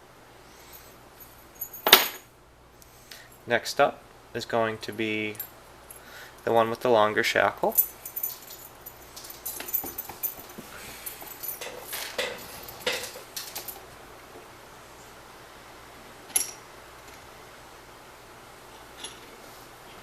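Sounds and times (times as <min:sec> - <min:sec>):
metal padlocks clinking: 0:07.7 - 0:13.8.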